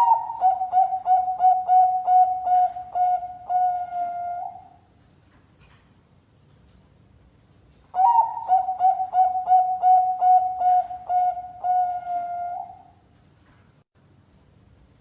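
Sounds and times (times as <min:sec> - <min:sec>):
dove cooing: 0:00.0 - 0:04.8, 0:08.0 - 0:13.0.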